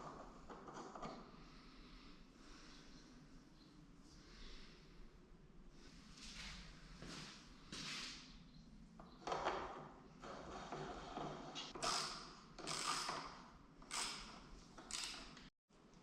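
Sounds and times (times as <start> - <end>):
parts and tools scraping and creaking: 0.0 - 1.4, 9.0 - 15.5.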